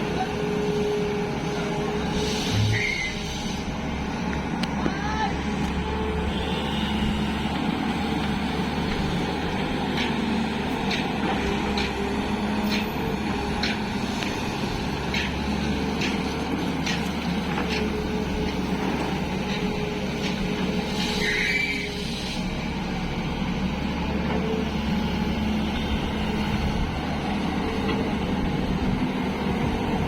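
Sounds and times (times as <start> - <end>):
excavator diesel engine: 0.0 - 30.0
high-pitched squeal: 2.1 - 3.6.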